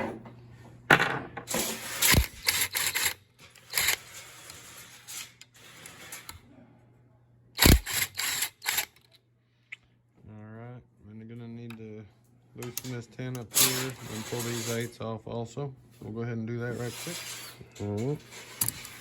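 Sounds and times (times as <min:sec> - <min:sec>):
wrench clanking on metal parts: 0:00.9 - 0:06.4, 0:07.6 - 0:09.1, 0:12.6 - 0:14.9, 0:16.9 - 0:19.0.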